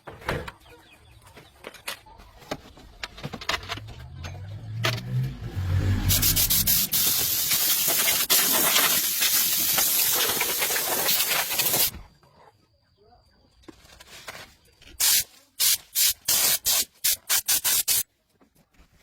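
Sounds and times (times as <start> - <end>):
loud spraying hiss: 6.1 - 11.9, 15.0 - 18.0.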